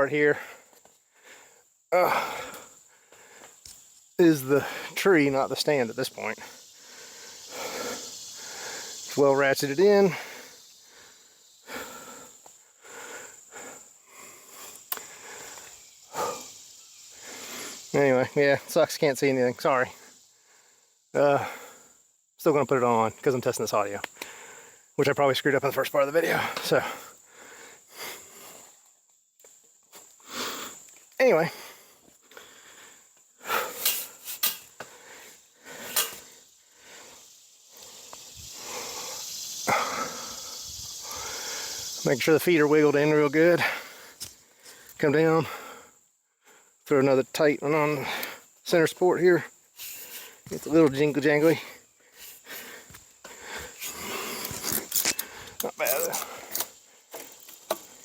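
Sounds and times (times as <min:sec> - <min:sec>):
man breathing hard: 0:00.3 - 0:03.6, 0:04.5 - 0:05.0, 0:06.4 - 0:09.1, 0:10.0 - 0:17.9, 0:20.0 - 0:22.1, 0:24.1 - 0:25.0, 0:26.4 - 0:28.8, 0:30.2 - 0:42.0, 0:43.6 - 0:46.8, 0:51.5 - 0:55.6.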